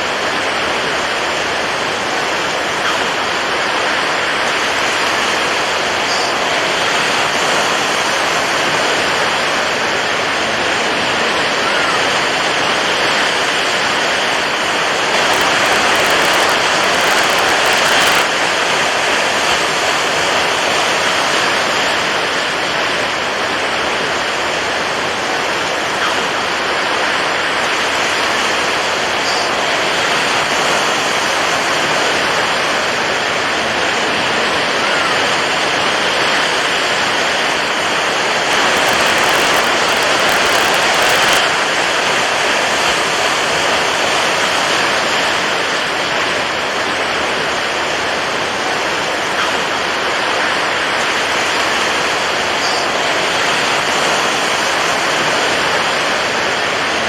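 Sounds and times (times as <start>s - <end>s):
waves rushing: 31.1s - 42.4s.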